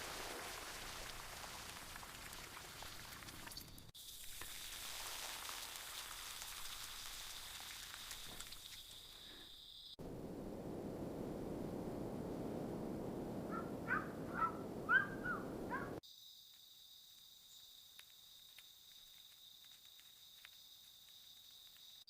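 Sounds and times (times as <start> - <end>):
crickets chirring: 8.0 - 22.0
low steady noise: 10.0 - 16.0.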